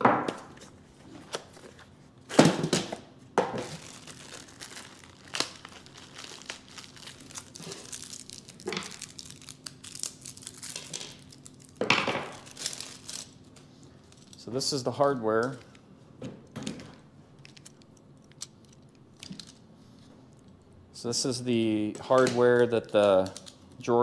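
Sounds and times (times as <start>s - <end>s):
plastic packaging crinkling: 3.6s - 14.5s, 17.3s - 19.6s, 22.3s - 23.8s.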